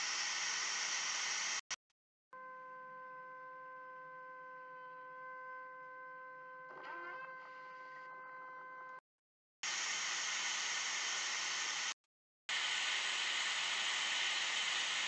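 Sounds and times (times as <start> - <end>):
static hiss: 0.0 - 1.6, 12.5 - 15.0
faint tonal hum: 2.4 - 9.0.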